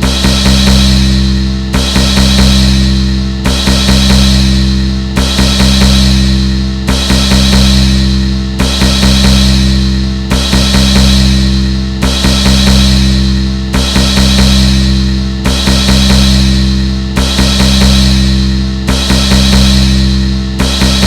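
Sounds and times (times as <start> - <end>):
drum hits with ringing decay: 0.0 - 21.0.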